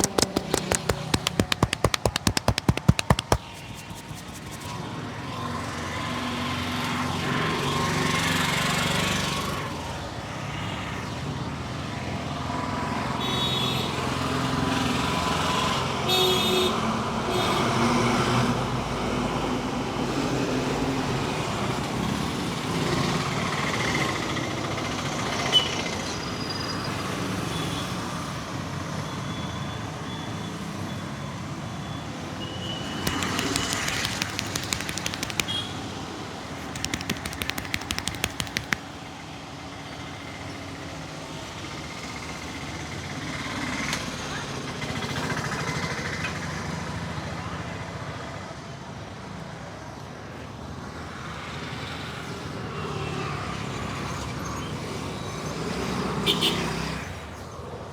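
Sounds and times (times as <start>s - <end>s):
sharp taps of hand chopping: 0.0s - 4.6s, 33.1s - 35.6s, 36.8s - 38.8s.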